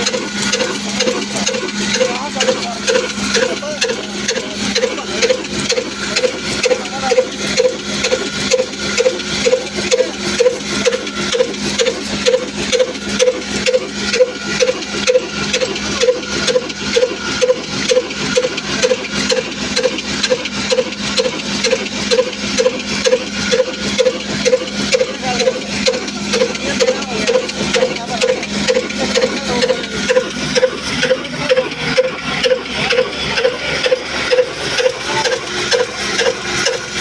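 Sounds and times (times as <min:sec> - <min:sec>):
diesel engine running: 0:00.0 - 0:37.0
exhaust beats: 0:00.0 - 0:37.0
mill hum and clatter: 0:00.0 - 0:37.0.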